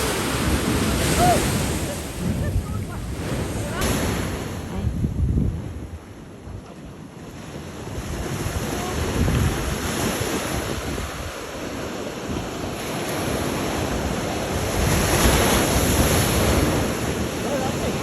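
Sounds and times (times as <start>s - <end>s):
ocean surf rushing: 0.0s - 18.0s
wind buffeting microphone: 0.0s - 18.0s.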